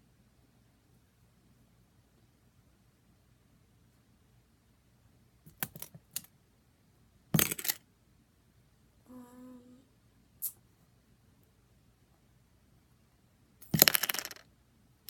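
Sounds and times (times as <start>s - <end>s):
clatter of small objects: 7.4s - 7.8s, 13.6s - 14.5s.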